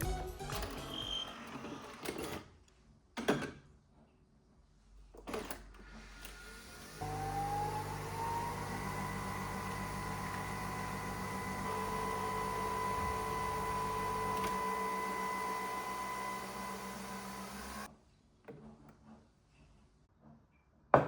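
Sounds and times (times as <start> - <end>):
small electric motor whining: 6.3 - 17.9.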